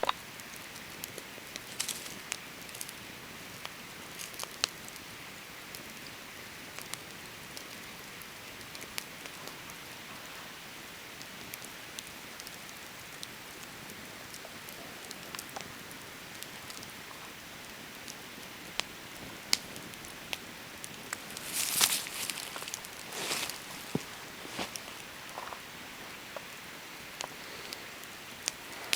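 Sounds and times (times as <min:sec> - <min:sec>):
campfire crackling and popping: 0:00.0 - 0:28.9
wood popping and snapping: 0:21.1 - 0:25.6.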